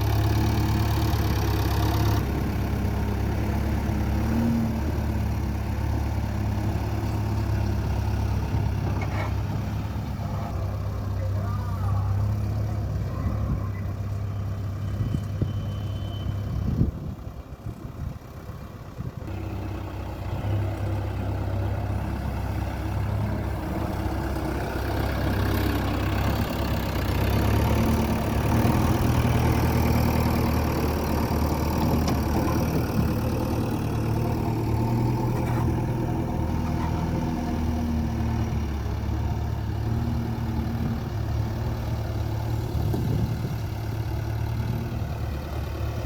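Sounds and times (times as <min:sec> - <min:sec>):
diesel engine running: 0:00.0 - 0:46.0.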